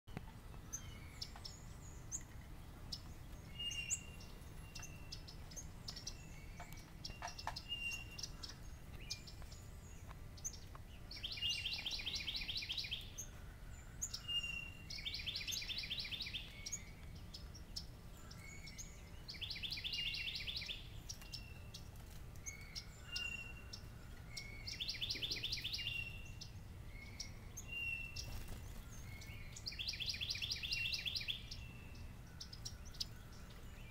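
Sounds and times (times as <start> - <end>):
songbird musical trill: 0.2 - 33.9
whistled bird notes and chip calls: 0.6 - 33.9.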